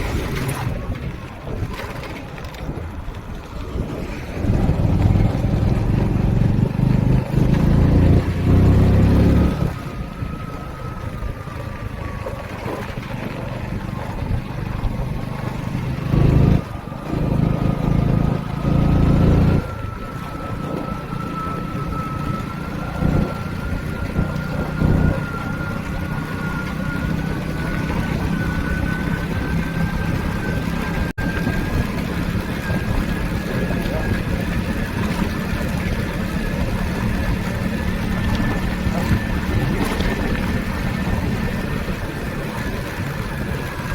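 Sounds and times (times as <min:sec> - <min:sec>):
vehicle engine running: 0:00.0 - 0:43.9
wind buffeting on microphone: 0:00.0 - 0:43.9
thin whine rising in pitch: 0:04.6 - 0:12.2, 0:14.6 - 0:43.9.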